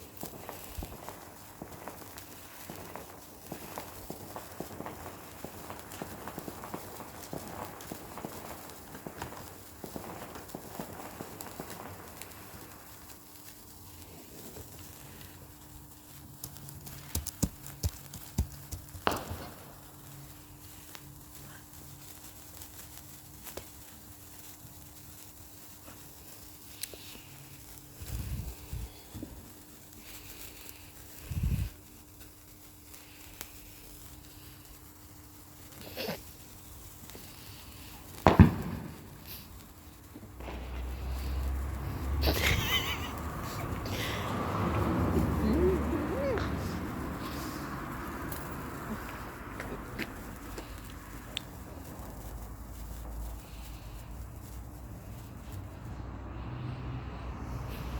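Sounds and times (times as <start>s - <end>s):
fireworks bangs and pops: 0.0s - 57.9s
sharp clicks and crackles: 0.1s - 55.9s
sharp cracks: 14.6s - 21.3s, 34.4s - 54.6s.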